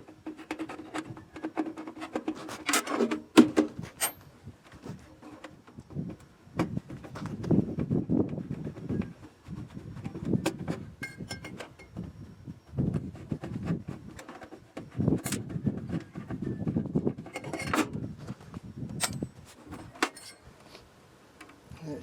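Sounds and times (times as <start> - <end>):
metal parts and tools clinking: 4.0 - 4.3, 19.0 - 20.5.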